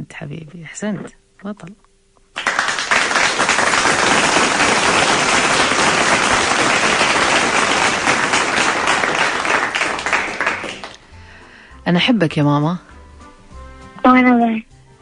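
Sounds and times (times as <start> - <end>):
many hands clapping: 2.3 - 11.0.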